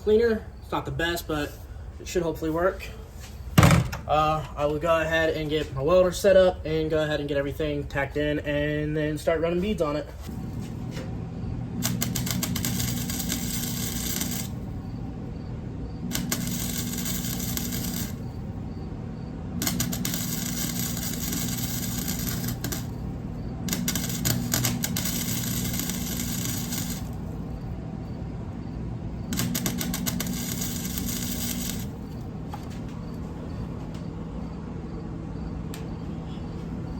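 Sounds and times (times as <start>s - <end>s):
arc welder crackling: 9.7s - 33.2s
welder low hum: 10.2s - 35.4s.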